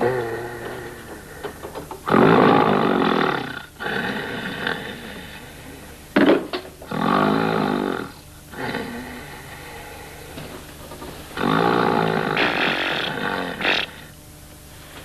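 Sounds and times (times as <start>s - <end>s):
man snoring loudly: 0.0s - 5.8s, 6.9s - 10.3s, 11.4s - 14.1s.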